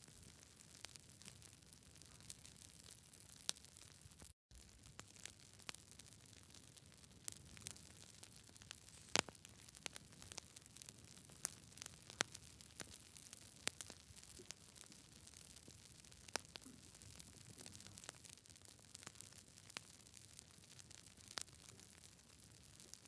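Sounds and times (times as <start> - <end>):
campfire crackles and pops: 0.1 - 23.0
soft hiss of fire: 4.6 - 23.0.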